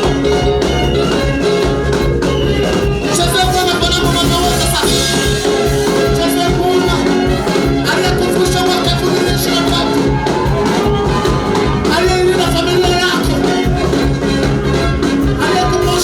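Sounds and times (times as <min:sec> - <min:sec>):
praise and worship music: 0:00.0 - 0:16.0.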